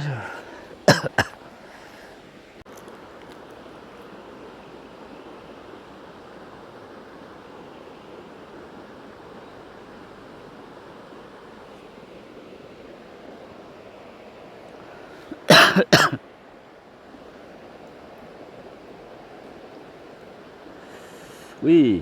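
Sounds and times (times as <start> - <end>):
steady background hiss: 0.0 - 22.0
person coughing: 0.9 - 1.4, 15.4 - 16.2.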